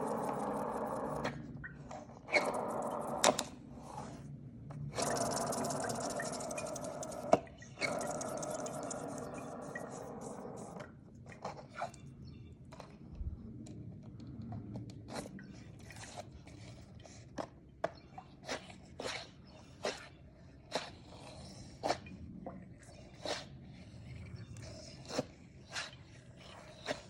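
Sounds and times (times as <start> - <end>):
fidget spinner whirring: 0.0 - 4.2, 4.9 - 10.8.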